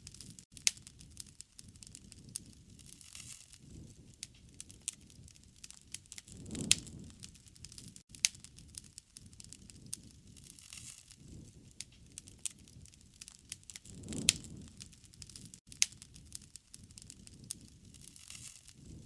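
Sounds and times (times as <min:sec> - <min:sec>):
low rush of flame: 0:00.0 - 0:19.0.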